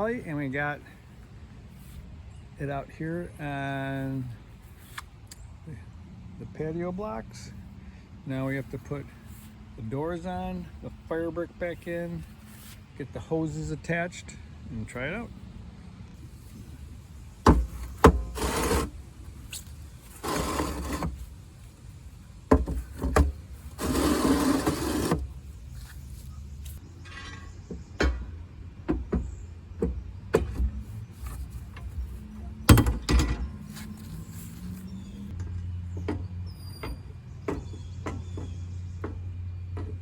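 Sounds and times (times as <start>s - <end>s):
metal scraping slides: 17.7s - 21.3s, 22.8s - 25.4s.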